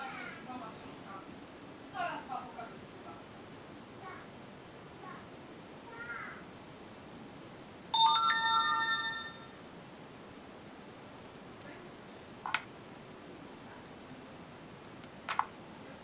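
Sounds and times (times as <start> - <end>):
smartphone electronic chime: 8.0 - 9.6.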